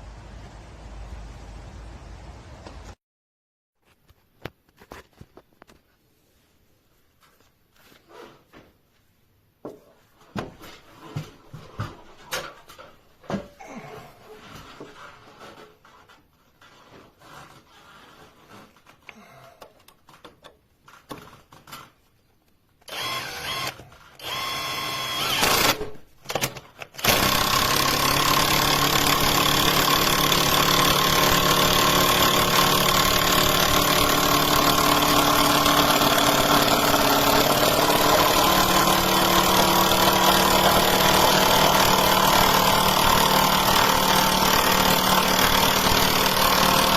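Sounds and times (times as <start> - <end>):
impact wrench motor running: 22.9 - 25.8, 27.0 - 46.9.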